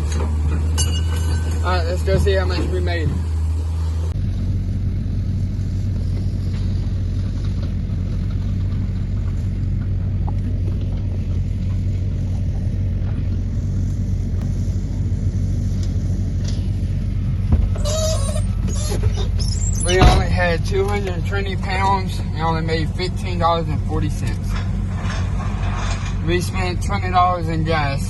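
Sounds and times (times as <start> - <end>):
pickup truck engine rumbling: 0.0 - 28.0.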